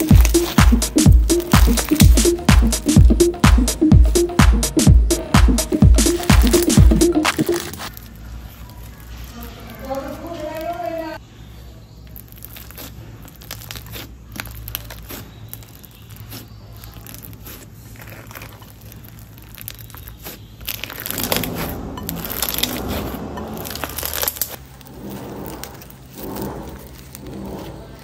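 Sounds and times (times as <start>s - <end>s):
slime squished by hand crackling: 0.0s - 3.6s, 11.9s - 28.0s.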